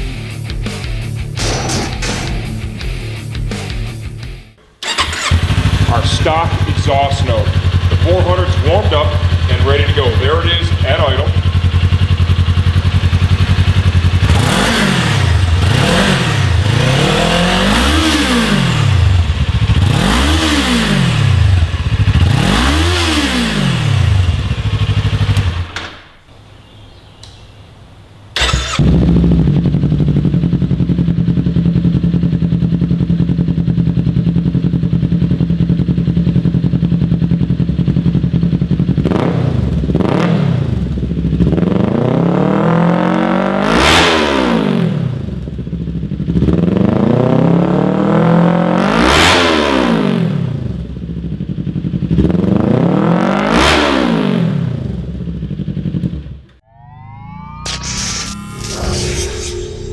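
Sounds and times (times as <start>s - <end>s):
motorcycle engine idling: 4.8s - 17.6s, 21.2s - 22.6s, 23.6s - 25.7s, 28.4s - 39.1s, 45.4s - 46.6s, 50.7s - 52.4s
motorcycle engine revving: 4.8s - 25.8s, 28.4s - 56.4s
click: 27.2s - 27.4s.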